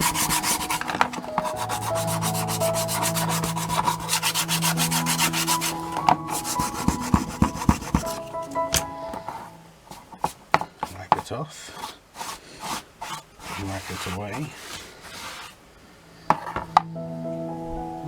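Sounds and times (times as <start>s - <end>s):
nail file scraping painted wood: 0.0s - 8.9s, 10.2s - 15.6s.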